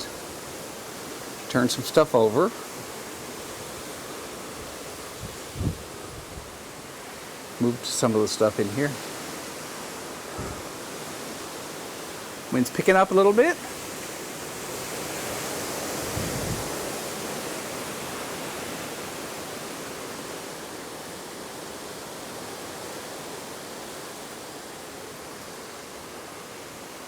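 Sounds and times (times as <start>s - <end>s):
storm wind blowing: 2.8s - 7.0s, 10.2s - 11.2s, 15.9s - 17.2s
wind rumble on microphone: 4.5s - 6.8s, 10.3s - 10.7s, 16.0s - 17.0s.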